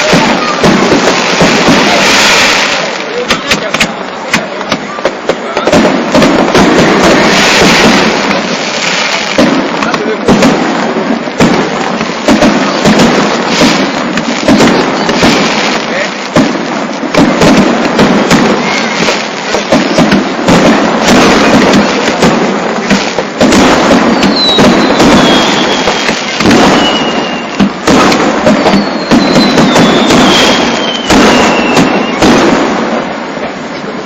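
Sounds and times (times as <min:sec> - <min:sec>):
falling firework whistles: 0:00.0 - 0:03.2, 0:11.4 - 0:34.0
fireworks bangs and crackling: 0:00.0 - 0:34.0.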